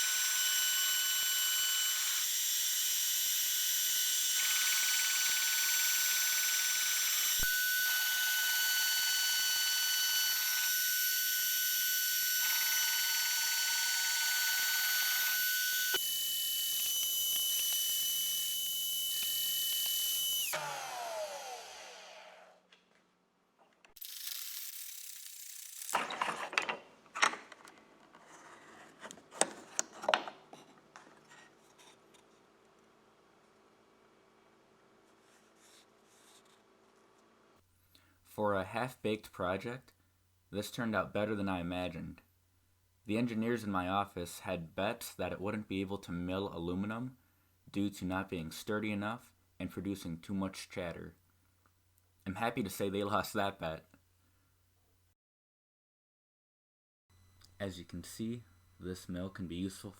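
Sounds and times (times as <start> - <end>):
router whining: 0.0 - 22.6.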